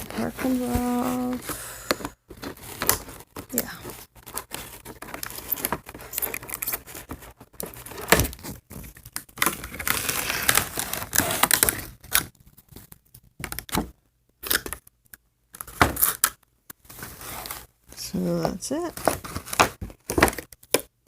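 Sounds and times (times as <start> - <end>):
packaging tearing and crinkling: 2.3 - 13.8.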